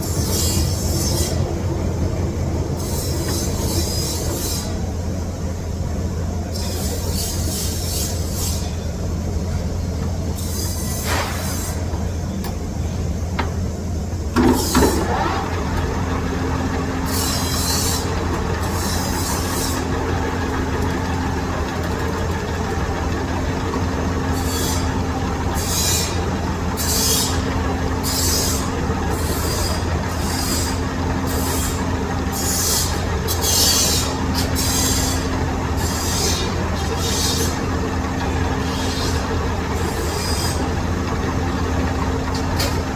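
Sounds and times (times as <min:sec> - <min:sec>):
tool cutting steel with hiss: 0:00.0 - 0:01.4, 0:02.8 - 0:04.8, 0:06.5 - 0:08.8, 0:10.4 - 0:11.9, 0:14.4 - 0:15.4, 0:17.0 - 0:19.9, 0:24.3 - 0:24.9, 0:25.6 - 0:26.2, 0:26.8 - 0:31.8, 0:32.4 - 0:37.6, 0:38.6 - 0:40.6
metal lathe humming: 0:14.4 - 0:42.9.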